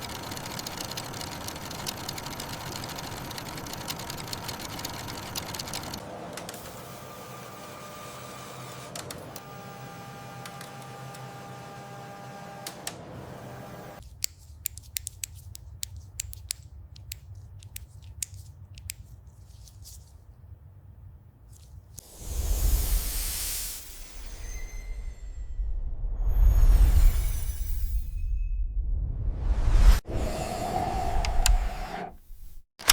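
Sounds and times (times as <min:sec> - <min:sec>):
sharp clicks: 0:14.1 - 0:19.0
low rumble: 0:24.0 - 0:31.8.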